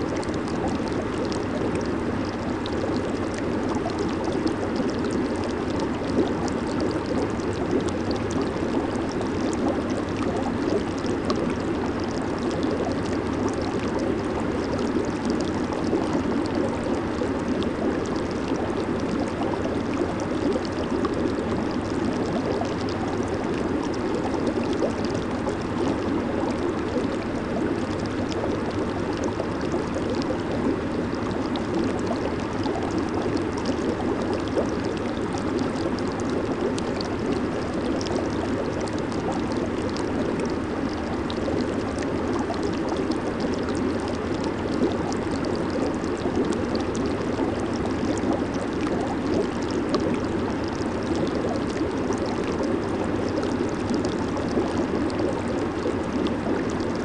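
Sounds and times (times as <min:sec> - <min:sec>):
jacuzzi water bubbling: 0:00.0 - 0:57.0.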